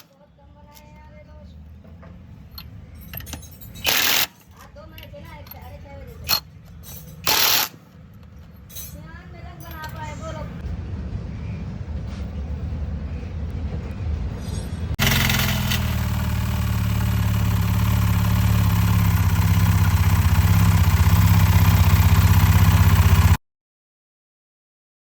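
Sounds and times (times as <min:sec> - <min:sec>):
auto rickshaw engine running: 0:15.0 - 0:23.4.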